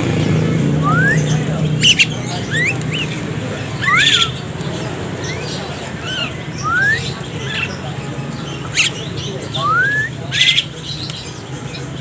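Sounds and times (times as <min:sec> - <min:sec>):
birds whistling: 0:00.0 - 0:12.0
harsh bird squawks: 0:00.8 - 0:04.6, 0:05.2 - 0:10.8.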